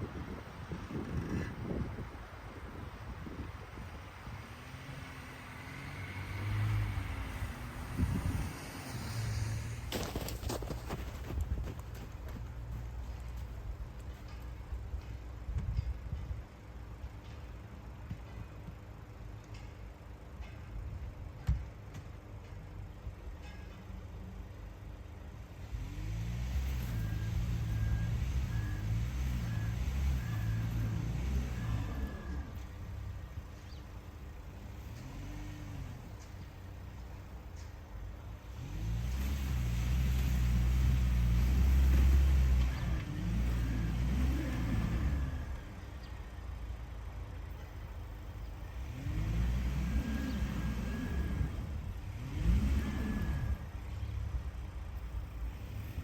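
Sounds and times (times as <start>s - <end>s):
low road rumble: 0.0s - 56.0s
car engine accelerating: 4.2s - 13.5s, 25.6s - 33.8s, 34.4s - 36.8s, 38.4s - 46.2s, 48.6s - 56.0s
car engine revving: 38.5s - 45.8s, 48.7s - 54.4s.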